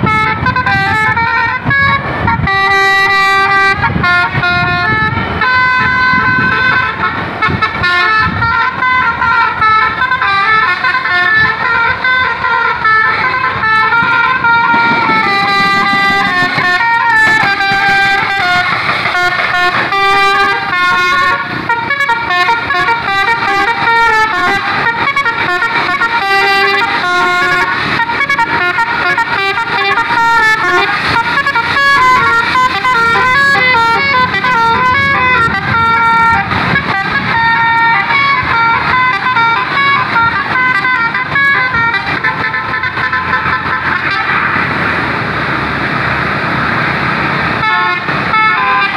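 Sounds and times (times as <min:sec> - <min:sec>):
musical air horn tune: 0:00.0 - 0:44.5, 0:47.6 - 0:48.9.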